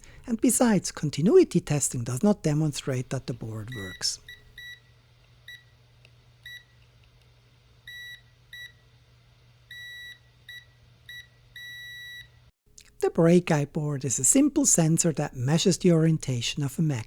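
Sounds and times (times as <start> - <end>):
high-pitched tester beeps: 3.7 - 4.8, 9.7 - 12.4.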